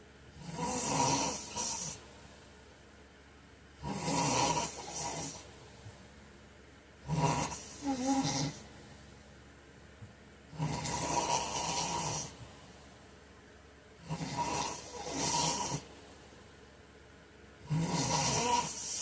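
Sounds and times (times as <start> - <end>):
man snoring: 0.4 - 2.0, 3.8 - 5.5, 7.0 - 8.7, 10.5 - 12.4, 14.0 - 15.9, 17.6 - 19.0.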